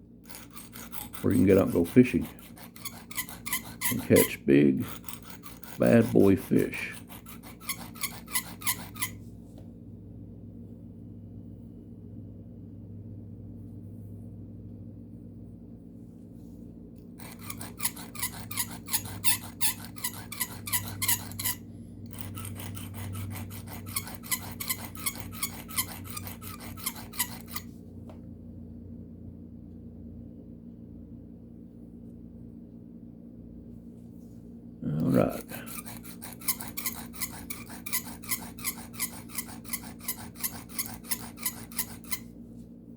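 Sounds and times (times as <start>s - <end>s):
steady low hum: 0.0s - 42.9s
knife scraping on sharpening stone: 0.3s - 9.2s, 17.2s - 27.7s, 35.2s - 42.3s.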